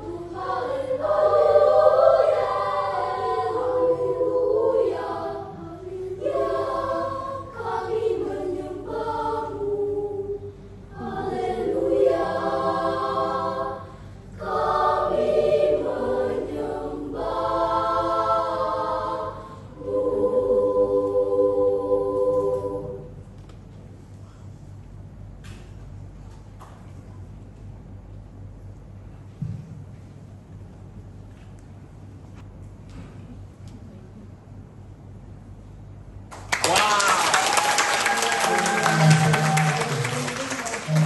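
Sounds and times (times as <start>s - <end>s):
choir singing: 0.0s - 23.2s, 37.9s - 41.0s.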